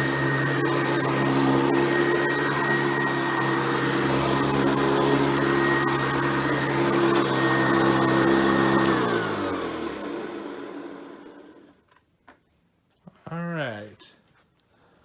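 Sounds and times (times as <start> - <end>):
vacuum cleaner motor running: 0.0 - 11.7
switch click: 8.8 - 9.1.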